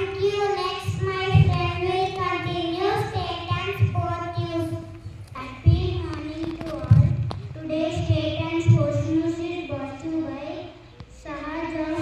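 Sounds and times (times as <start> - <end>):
child singing: 11.2 - 12.0.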